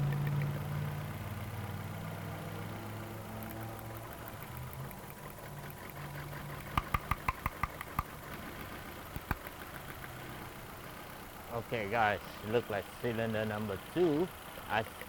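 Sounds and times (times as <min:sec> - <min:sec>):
misfiring car engine idling: 0:00.0 - 0:15.0
sharp snapping spark clicks: 0:06.6 - 0:08.1.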